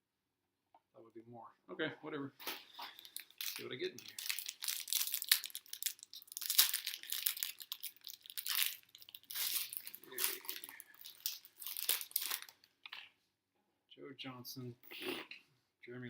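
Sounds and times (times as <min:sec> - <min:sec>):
plastic wrapper tearing and crinkling: 0:02.4 - 0:13.0.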